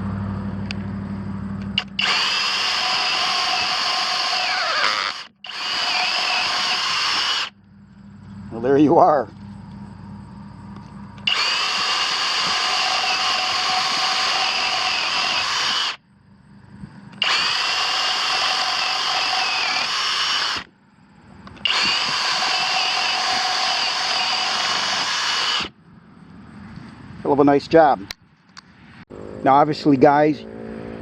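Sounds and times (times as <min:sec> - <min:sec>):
rotary hammer drill spinning: 0:01.8 - 0:07.6, 0:11.2 - 0:16.0, 0:17.1 - 0:20.7, 0:21.5 - 0:25.7.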